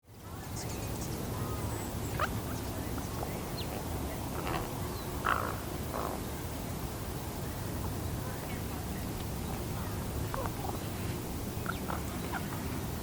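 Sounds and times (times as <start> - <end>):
young raven scratchy calls: 5.2 - 6.2.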